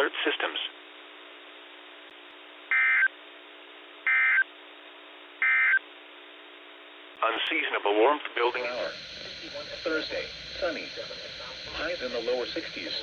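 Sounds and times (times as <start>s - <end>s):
faint radio hiss and hum: 0.0s - 13.0s
buzzy digital data tones: 2.7s - 3.1s, 4.1s - 4.4s, 8.5s - 13.0s.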